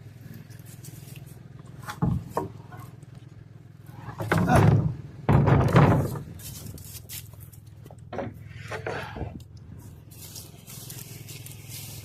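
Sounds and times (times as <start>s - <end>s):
wooden boards knocking: 1.9s - 2.6s, 4.2s - 6.3s
wooden boards scraping: 3.9s - 6.8s, 8.1s - 9.4s.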